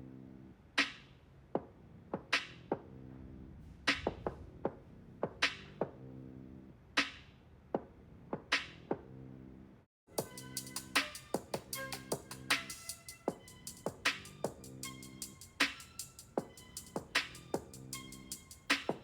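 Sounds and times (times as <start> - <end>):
music with slow programmed beat: 10.2 - 19.0.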